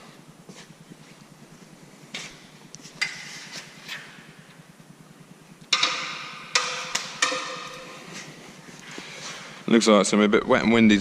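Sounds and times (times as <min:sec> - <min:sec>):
sharp knocks with ringing: 0:05.7 - 0:08.0.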